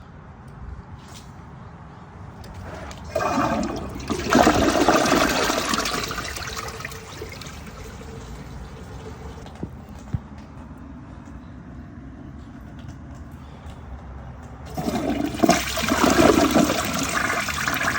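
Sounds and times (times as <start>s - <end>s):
toilet flushing: 2.6s - 9.6s, 14.7s - 17.9s
water running as tank refills: 2.6s - 9.8s, 14.7s - 17.9s.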